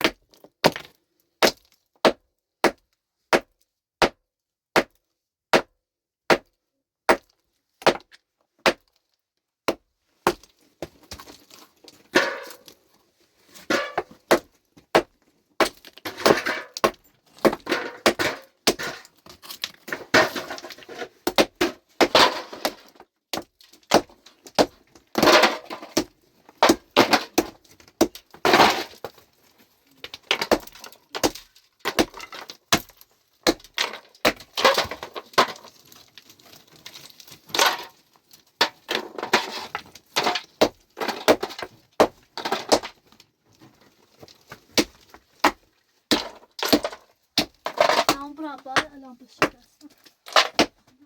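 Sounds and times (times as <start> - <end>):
stones knocking and clattering: 30.0 - 50.9.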